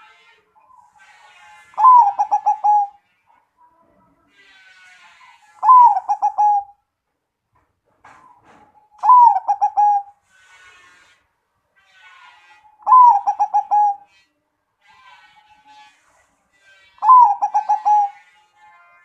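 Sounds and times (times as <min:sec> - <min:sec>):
dove cooing song: 0:01.8 - 0:03.0, 0:05.6 - 0:06.8, 0:08.3 - 0:10.1, 0:12.8 - 0:14.1, 0:17.0 - 0:18.2.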